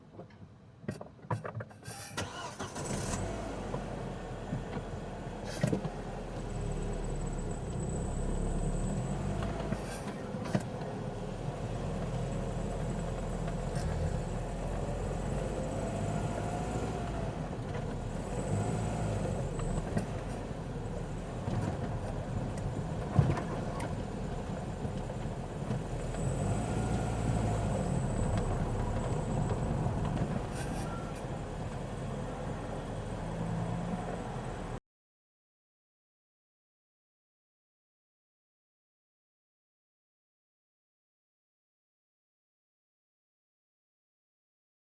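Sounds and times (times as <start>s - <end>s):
car engine running: 11.0s - 32.2s.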